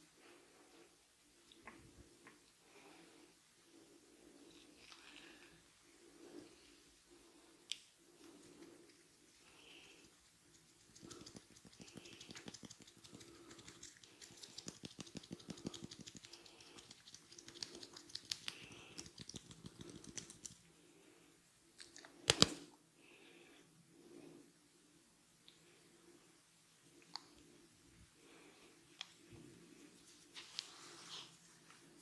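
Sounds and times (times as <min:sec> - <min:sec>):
fingers crackling through hair: 0:10.1 - 0:20.6, 0:22.2 - 0:22.6.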